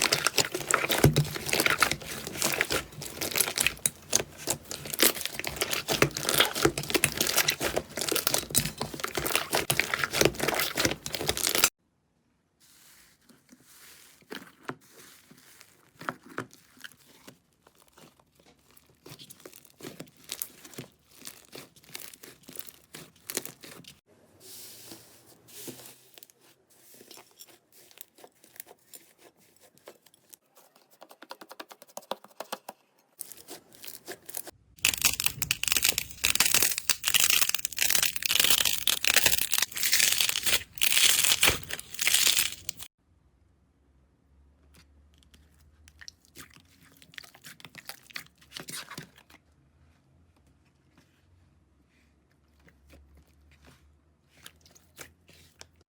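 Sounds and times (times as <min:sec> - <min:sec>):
slime crackling and popping: 0:00.0 - 0:11.7, 0:17.8 - 0:23.9, 0:34.0 - 0:42.9.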